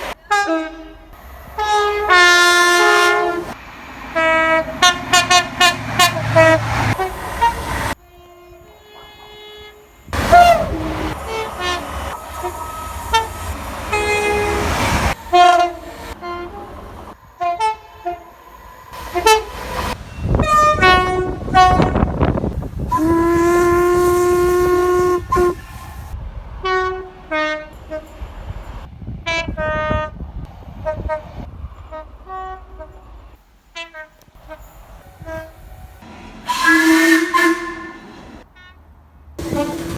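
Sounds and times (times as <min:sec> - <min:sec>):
train running noise: 0:00.0 - 0:38.6, 0:39.2 - 0:39.9
train horn blasts: 0:00.1 - 0:28.4, 0:29.2 - 0:30.2, 0:30.8 - 0:39.9.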